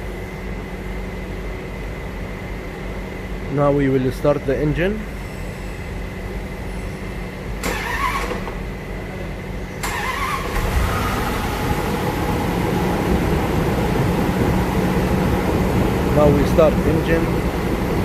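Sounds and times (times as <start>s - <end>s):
car engine starting and running: 7.6s - 8.8s, 9.8s - 18.0s.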